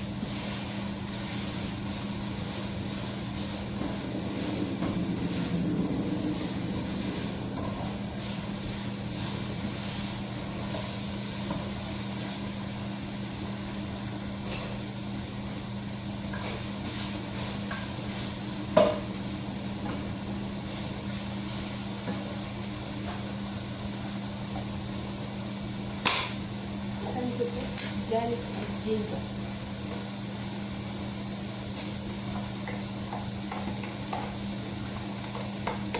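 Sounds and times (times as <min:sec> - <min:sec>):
food sizzling in a pan: 0:00.0 - 0:05.6, 0:06.3 - 0:35.9
low hum: 0:02.3 - 0:10.6
utensil knocking on pan: 0:26.0 - 0:26.4.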